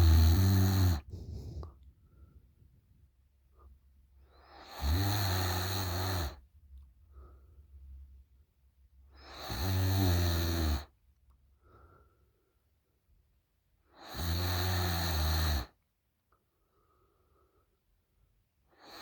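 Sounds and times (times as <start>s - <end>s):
woman snoring loudly: 0.0s - 1.6s, 4.6s - 6.4s, 9.3s - 10.8s, 14.0s - 15.7s
soft breaths: 0.0s - 5.0s, 7.0s - 8.1s, 11.5s - 12.8s.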